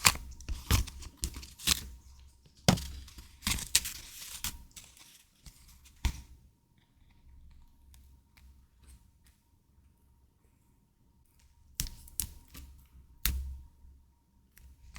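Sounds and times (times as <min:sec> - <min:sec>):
packaging crinkling and tearing: 0:00.0 - 0:06.0.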